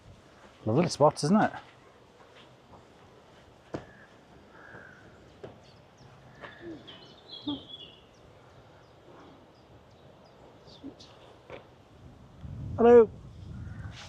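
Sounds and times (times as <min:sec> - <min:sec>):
birds chirping: 0:02.8 - 0:11.8.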